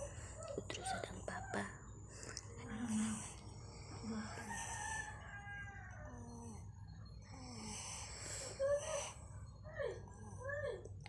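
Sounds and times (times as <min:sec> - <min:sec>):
rooster crowing: 0:04.2 - 0:06.3.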